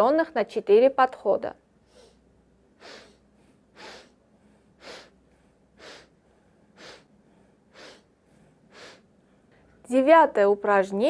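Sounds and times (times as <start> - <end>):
person sniffing through nose: 2.8 - 3.2, 3.8 - 4.2, 4.8 - 5.2, 5.8 - 6.2, 6.8 - 7.1, 7.7 - 8.1, 8.7 - 9.1.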